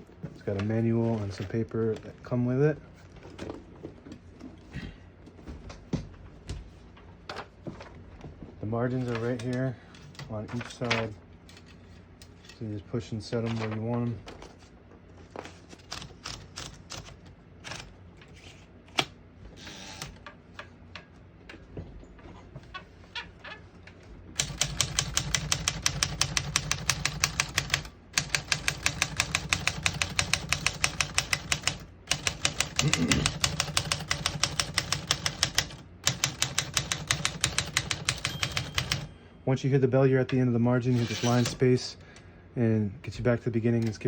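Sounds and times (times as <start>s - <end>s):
rapid typewriter typing: 15.8s - 17.9s, 24.4s - 39.1s, 40.9s - 41.7s.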